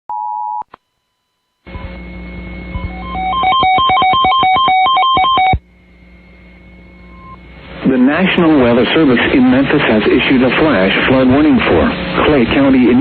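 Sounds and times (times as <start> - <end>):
hissy humming audio line: 0.7 - 13.0
telephone touch-tone beeps: 2.8 - 5.6.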